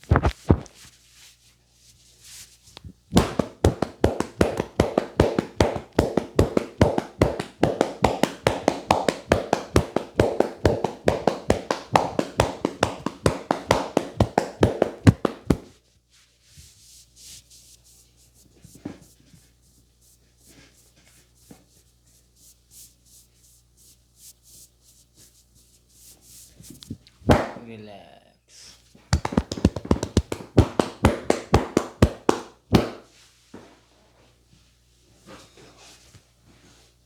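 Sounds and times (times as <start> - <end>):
hand slaps of head massage: 0.0 - 0.7, 3.1 - 15.7, 27.3 - 27.6, 29.1 - 33.1.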